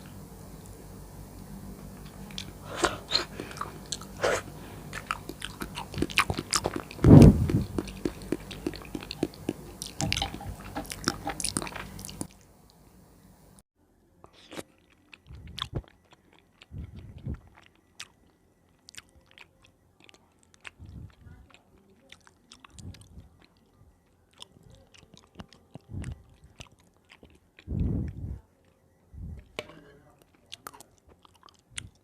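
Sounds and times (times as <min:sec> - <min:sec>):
wet chewing and mouth smacks: 0:02.0 - 0:12.4, 0:14.3 - 0:29.6, 0:30.2 - 0:32.0
soft low thumps: 0:05.9 - 0:10.6, 0:27.7 - 0:28.4.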